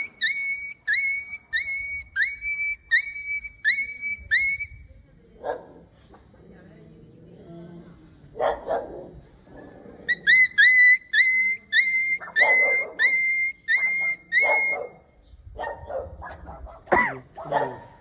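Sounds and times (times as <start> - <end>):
dog barking: 5.4 - 5.9, 8.4 - 9.2, 12.2 - 13.1, 13.8 - 18.0
dog yelping: 11.8 - 15.0, 15.6 - 18.0.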